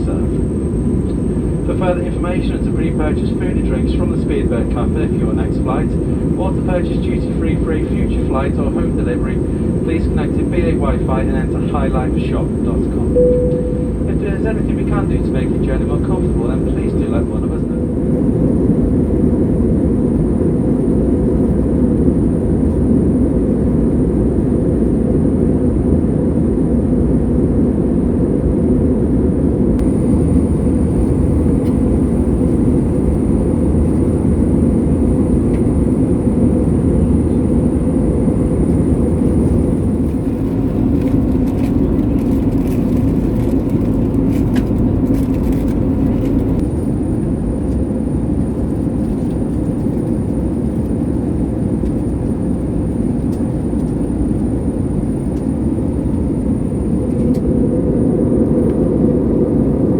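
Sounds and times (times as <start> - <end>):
airplane cabin airflow and engine rush: 0.0 - 59.9
thin high whine: 12.9 - 17.0.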